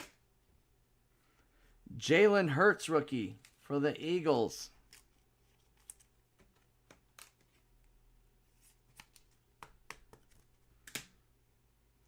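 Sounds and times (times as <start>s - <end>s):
trading cards clicking and rustling: 4.7s - 7.9s.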